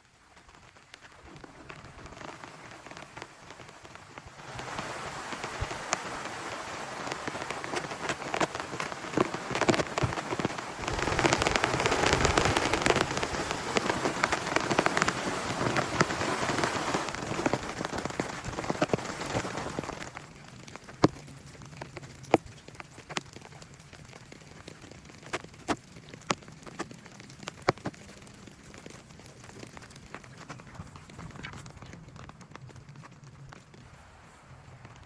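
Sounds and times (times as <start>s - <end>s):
heavy rain falling: 0.6s - 23.4s.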